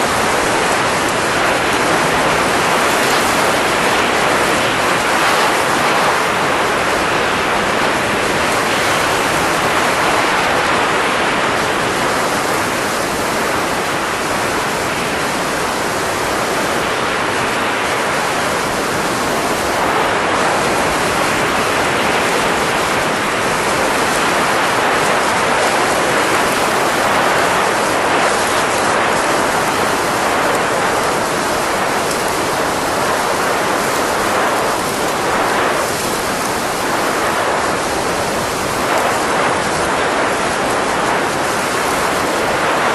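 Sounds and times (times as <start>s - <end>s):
rushing hiss of blowing air: 0.0s - 42.9s.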